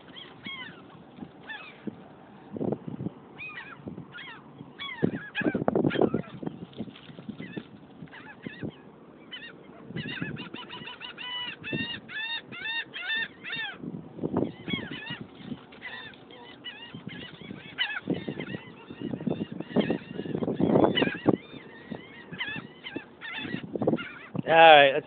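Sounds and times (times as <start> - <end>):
terns calling: 0.0 - 1.9, 14.4 - 25.0.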